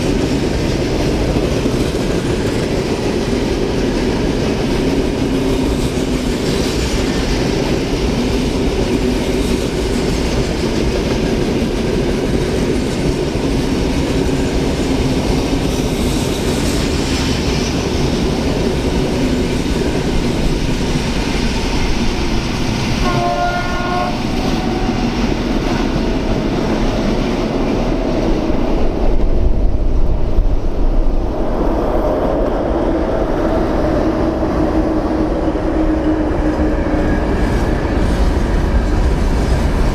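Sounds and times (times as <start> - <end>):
train rumbling on rails: 0.0 - 39.9
train horn blast: 22.9 - 25.8.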